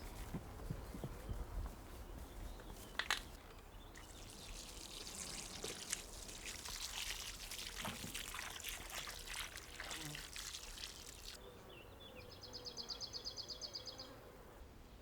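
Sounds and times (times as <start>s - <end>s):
liquid pouring and splashing: 4.0s - 11.4s.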